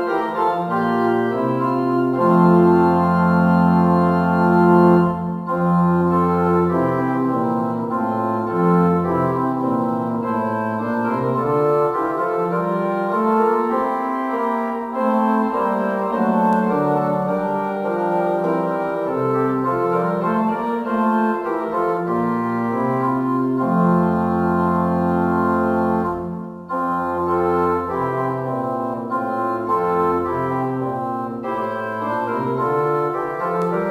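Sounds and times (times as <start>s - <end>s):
deep bass organ notes: 0.0s - 13.8s
organ playing sustained chords: 0.0s - 33.9s.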